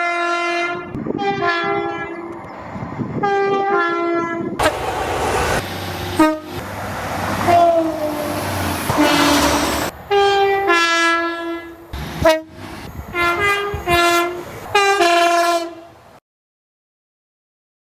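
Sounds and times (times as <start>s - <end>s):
train two-tone horn blasts: 0.0s - 2.4s, 3.2s - 4.9s, 6.1s - 6.6s, 7.4s - 16.0s
rush of passing train: 0.0s - 16.2s.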